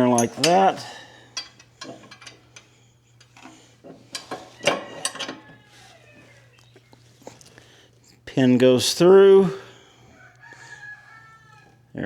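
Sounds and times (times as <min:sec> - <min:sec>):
metal knocking and clinking: 0:00.0 - 0:00.7, 0:01.3 - 0:05.6.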